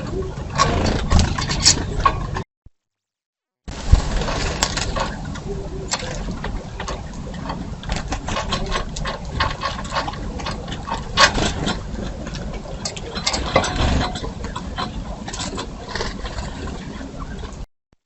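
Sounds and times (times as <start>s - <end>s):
low rumble: 3.7s - 17.7s.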